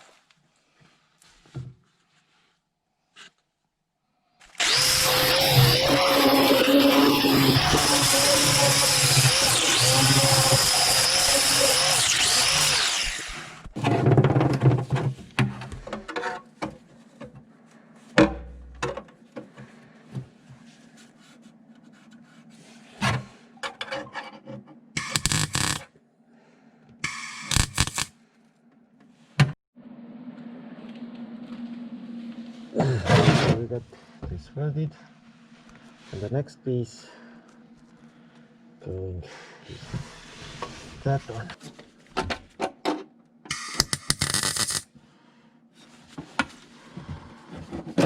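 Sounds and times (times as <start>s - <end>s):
harsh bursts of welding noise: 4.6s - 13.6s, 25.0s - 25.9s, 27.0s - 28.1s, 43.5s - 44.8s.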